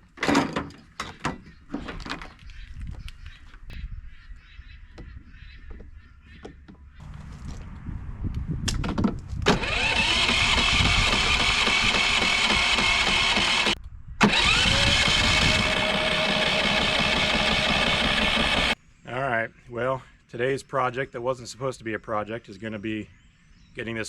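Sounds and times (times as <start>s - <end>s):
generator engine running: 9.5s - 18.8s.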